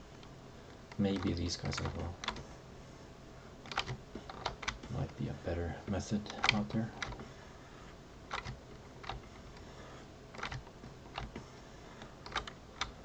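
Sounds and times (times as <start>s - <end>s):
computer keyboard key clicks: 3.7s - 4.8s, 6.4s - 7.2s, 8.3s - 9.2s, 10.4s - 11.3s.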